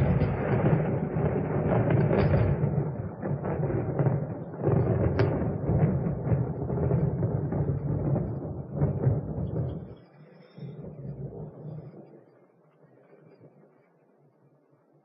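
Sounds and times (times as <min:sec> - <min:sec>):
thunder rumbling: 0:00.0 - 0:10.0, 0:10.8 - 0:12.1.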